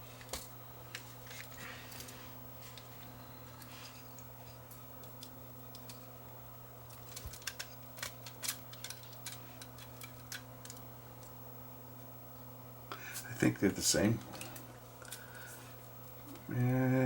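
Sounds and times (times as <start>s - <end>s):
low electrical hum: 0.0s - 17.0s
small parts clicking and tapping: 3.6s - 6.1s, 6.9s - 11.4s.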